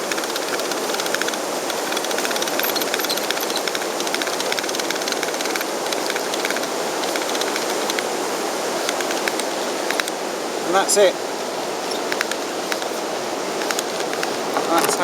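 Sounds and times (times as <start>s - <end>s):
reel clicking: 0.0s - 8.2s, 8.8s - 10.2s, 11.8s - 15.0s
wind and water rushing: 4.5s - 15.0s.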